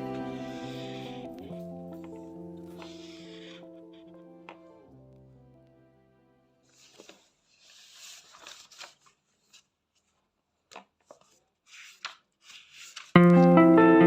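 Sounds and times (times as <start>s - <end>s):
guitar music: 0.0s - 6.0s, 13.2s - 14.0s
paper rustling and scraping: 0.3s - 4.6s, 6.6s - 10.3s, 11.0s - 13.5s.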